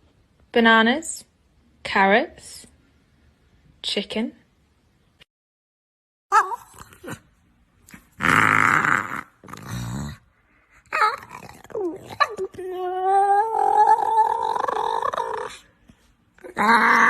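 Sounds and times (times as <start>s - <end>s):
dog growling whining and howling: 6.3s - 7.3s, 7.9s - 15.7s, 16.4s - 17.0s.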